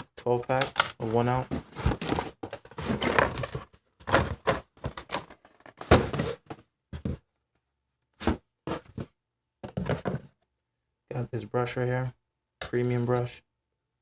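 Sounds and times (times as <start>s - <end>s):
plastic bottles clattering: 0.2s - 6.6s.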